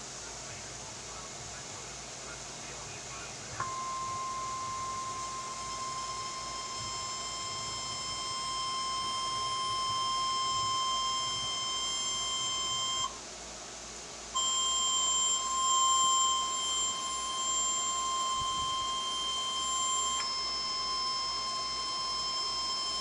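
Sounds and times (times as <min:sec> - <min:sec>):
steady high warning beep: 0:00.0 - 0:13.2, 0:14.3 - 0:23.0.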